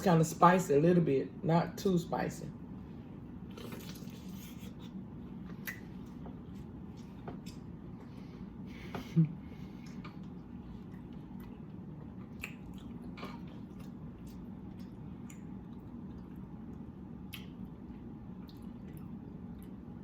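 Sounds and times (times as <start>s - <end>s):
steady low hum: 0.0s - 20.0s
wet chewing mouth sounds: 9.7s - 19.8s.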